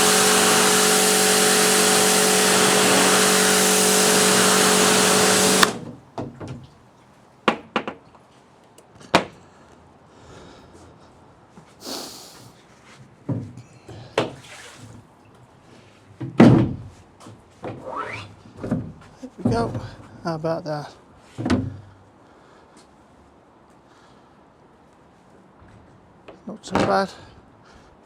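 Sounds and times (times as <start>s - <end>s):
pressure washer spraying water: 0.0s - 5.9s.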